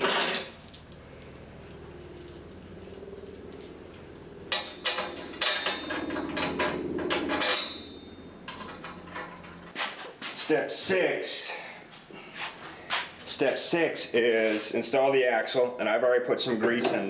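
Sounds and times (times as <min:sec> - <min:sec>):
metal hardware clinking: 0:00.0 - 0:09.8
faint low hum: 0:00.3 - 0:09.7.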